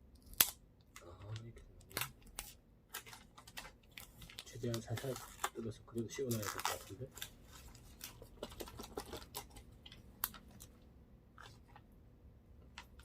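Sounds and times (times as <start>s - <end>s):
plastic wrap crinkling: 1.4s - 10.8s.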